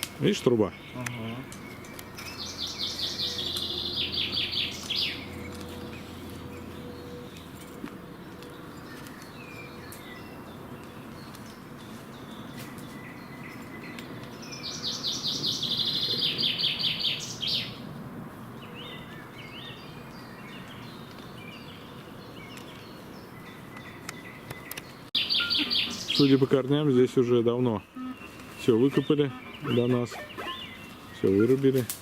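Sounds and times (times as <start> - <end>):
songbirds singing: 0.0 - 32.0
short bird chirps: 25.2 - 26.3
bird trilling loudly: 25.2 - 26.4, 27.9 - 30.8.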